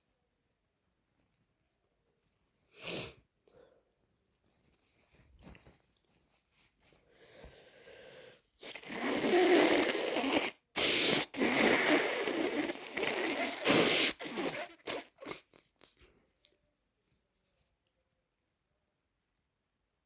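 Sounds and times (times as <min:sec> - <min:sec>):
person blowing nose into tissue: 0:02.7 - 0:03.2, 0:07.3 - 0:16.0.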